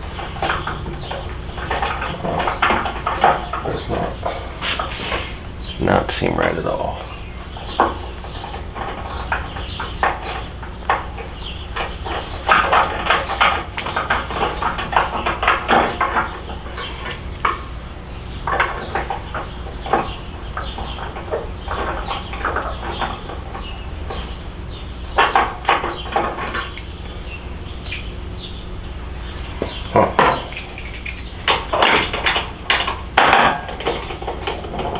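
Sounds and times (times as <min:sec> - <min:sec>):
hand tools clinking on metal: 0:27.8 - 0:28.2, 0:30.0 - 0:34.9.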